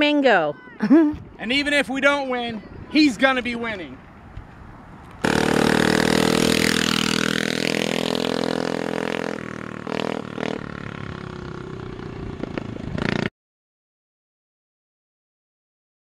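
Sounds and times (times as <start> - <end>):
small engine running: 5.2 - 13.2.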